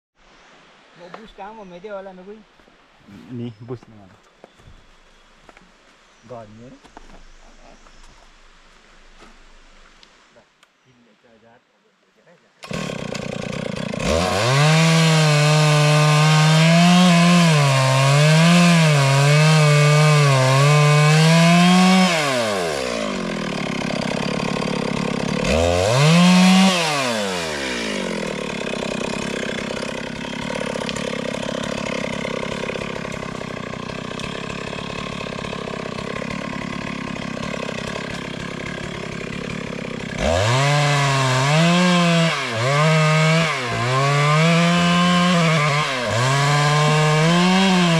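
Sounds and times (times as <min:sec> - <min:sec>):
chainsaw cutting wood: 0:12.6 - 0:47.9.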